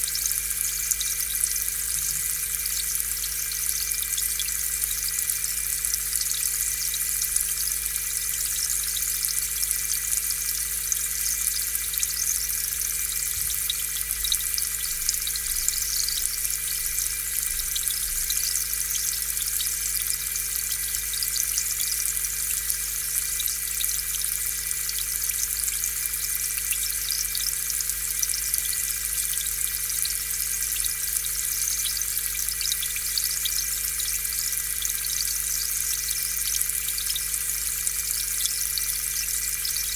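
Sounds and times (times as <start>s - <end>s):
air pump humming: 1.7s - 2.8s.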